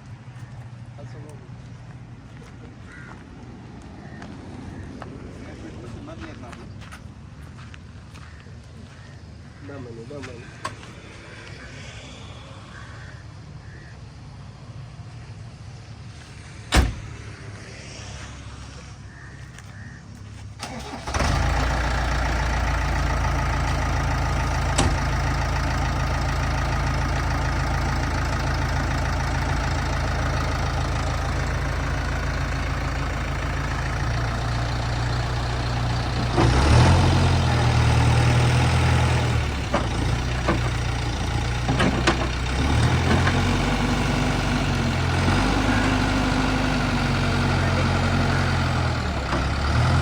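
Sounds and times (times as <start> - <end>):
diesel engine revving: 20.6 - 50.0.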